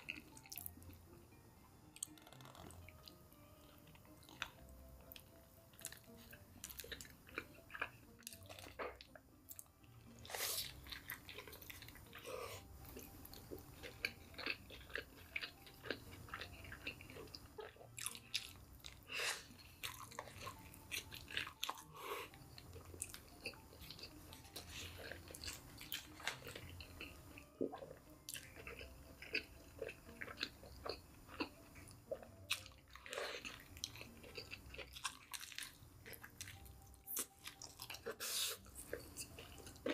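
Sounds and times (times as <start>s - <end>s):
wet chewing: 3.8s - 39.9s
crunching fried chicken: 13.4s - 27.4s, 32.2s - 39.9s.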